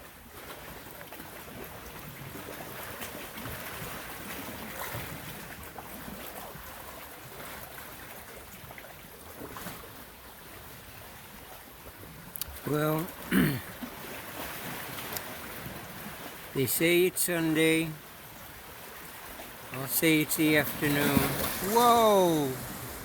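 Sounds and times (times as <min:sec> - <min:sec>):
sea surf: 0:12.5 - 0:23.0
coastal wind: 0:13.7 - 0:23.0.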